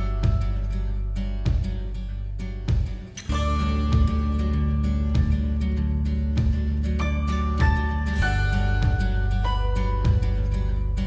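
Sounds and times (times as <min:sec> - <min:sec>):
bass line with beat: 0:00.0 - 0:11.0
strummed acoustic guitar: 0:00.0 - 0:11.0.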